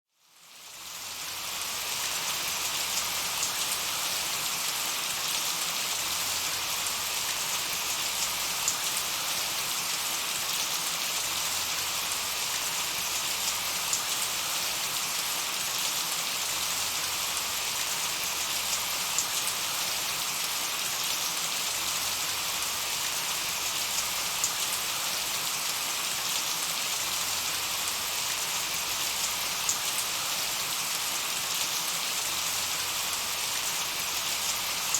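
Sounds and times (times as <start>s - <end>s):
gentle rain falling: 0.2s - 34.9s.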